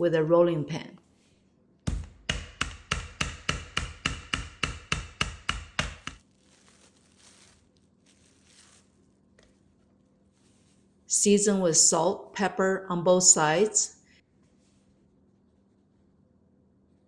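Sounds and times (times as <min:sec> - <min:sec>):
rolling pin pounding meat: 0:01.9 - 0:06.2
plastic wrap rustling: 0:06.1 - 0:11.0.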